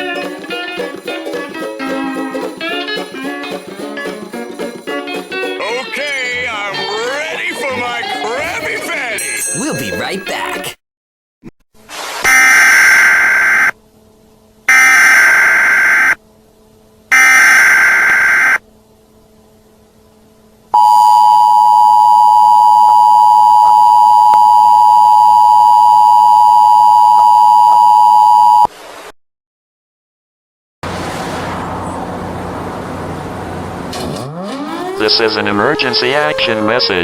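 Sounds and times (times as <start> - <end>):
two-tone attention signal: 14.7 - 16.2, 17.1 - 18.6, 20.8 - 28.7
harsh screeching data bursts: 17.1 - 18.6.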